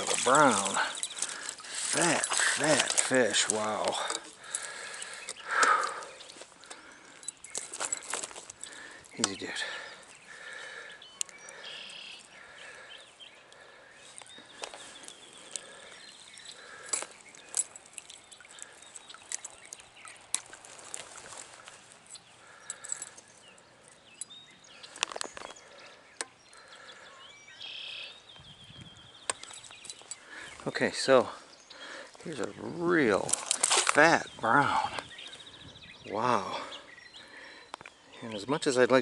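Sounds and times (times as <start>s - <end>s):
water splashes: 0.0s - 6.4s, 15.5s - 22.1s.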